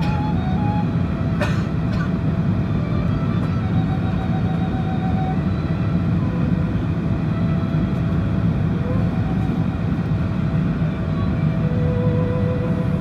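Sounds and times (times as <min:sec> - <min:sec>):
airliner rumble in flight: 0:00.0 - 0:13.0
faint jet engine whine: 0:00.0 - 0:13.0.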